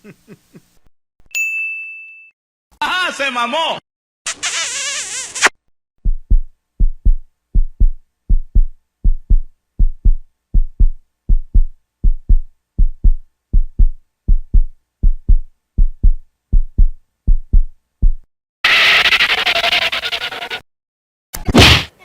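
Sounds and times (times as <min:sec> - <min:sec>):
heartbeat thumps: 0:06.0 - 0:18.3.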